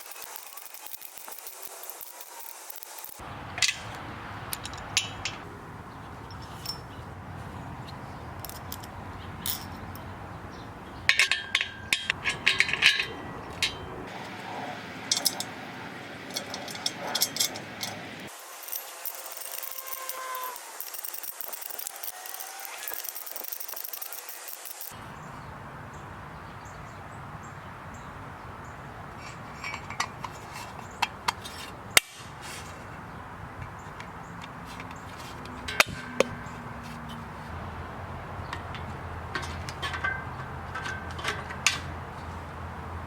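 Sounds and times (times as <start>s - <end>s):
metal parts clinking and knocking: 0.0s - 5.5s, 6.3s - 6.9s, 8.4s - 10.1s, 11.1s - 13.9s, 15.1s - 15.5s, 16.3s - 25.0s, 29.2s - 31.8s, 34.0s - 37.2s, 38.5s - 41.9s.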